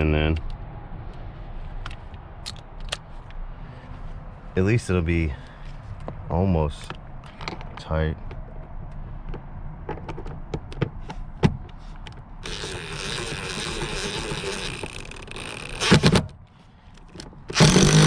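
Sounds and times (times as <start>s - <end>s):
light clicks of bit and bolt: 1.8s - 3.4s, 9.2s - 18.0s
impact wrench whirring: 12.4s - 16.2s, 17.5s - 18.0s
impact wrench hammering burst: 15.7s - 16.3s, 17.5s - 18.0s.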